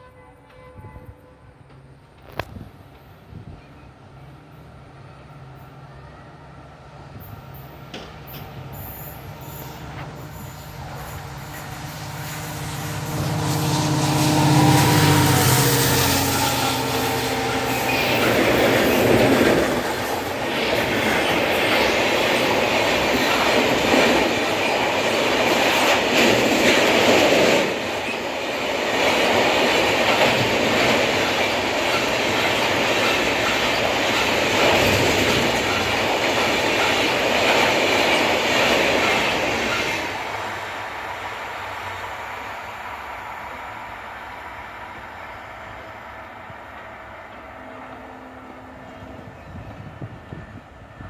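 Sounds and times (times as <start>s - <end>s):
train wheels clattering over rail joints: 15.6s - 40.2s.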